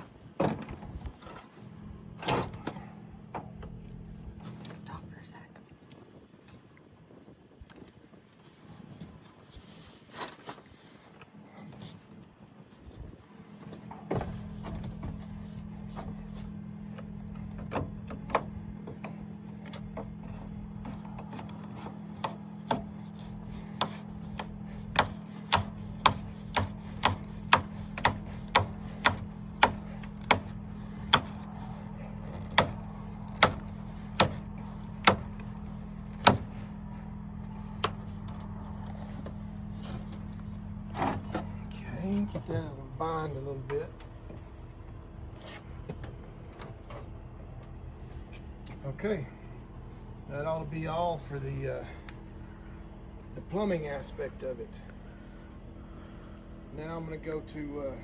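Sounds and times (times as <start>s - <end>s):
low machine hum: 0.0s - 10.1s, 10.7s - 58.0s.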